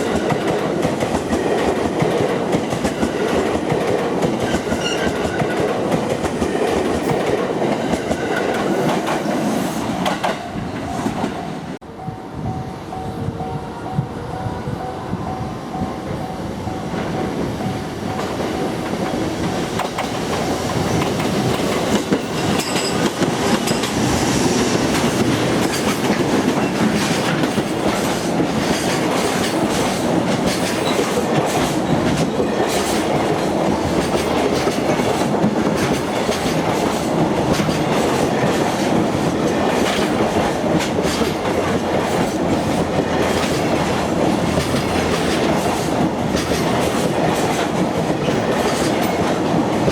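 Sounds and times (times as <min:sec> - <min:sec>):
freight train passing: 0:00.0 - 0:49.9
wheels clicking over rail joints: 0:16.9 - 0:49.9.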